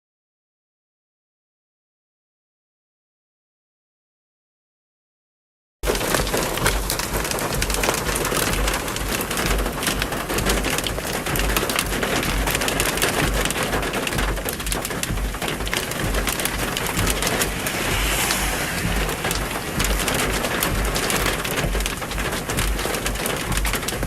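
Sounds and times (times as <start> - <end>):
heavy rain falling: 5.8 - 24.0
wind buffeting microphone: 13.2 - 23.9.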